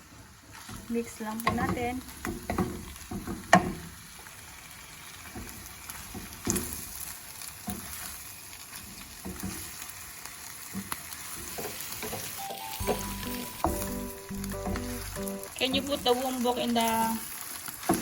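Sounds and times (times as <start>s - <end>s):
meat sizzling in a frying pan: 0.0s - 18.0s
spatula scraping a pan: 5.2s - 13.9s.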